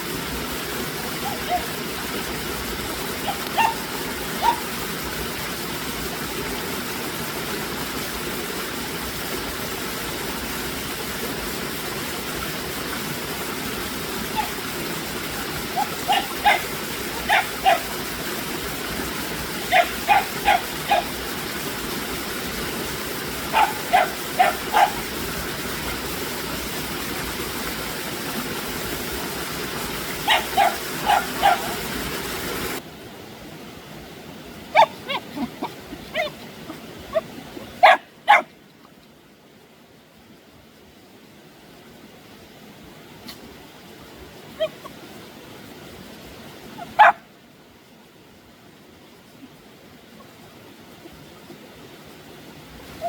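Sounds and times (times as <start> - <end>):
dog barking: 1.2 - 1.7, 3.2 - 4.7, 14.3 - 14.6, 15.7 - 17.9, 19.7 - 21.2, 23.5 - 25.1, 30.3 - 31.8, 34.7 - 35.2, 37.8 - 38.5, 46.8 - 47.2.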